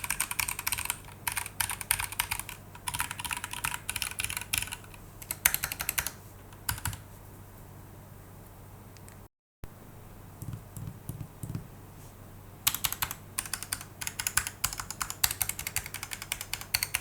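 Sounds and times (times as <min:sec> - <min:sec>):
mechanical keyboard typing: 0:00.0 - 0:07.0, 0:12.7 - 0:17.0.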